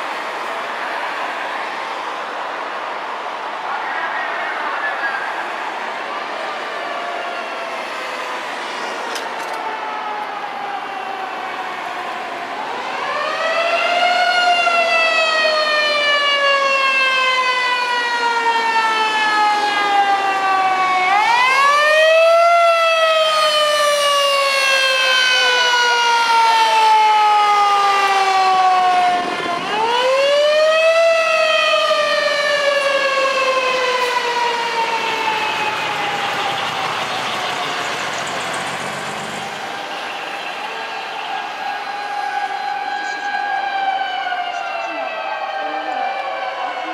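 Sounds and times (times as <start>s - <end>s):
fire engine siren wailing: 0.0s - 46.9s.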